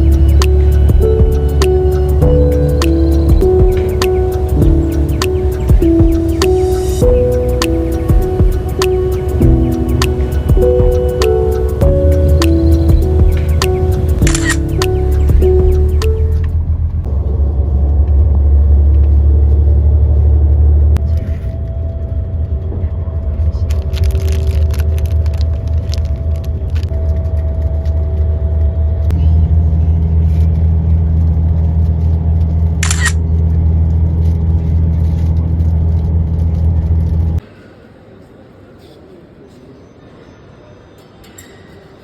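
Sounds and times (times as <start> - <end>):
vehicle interior rumble: 0.0 - 37.4
faint voices: 36.6 - 42.0.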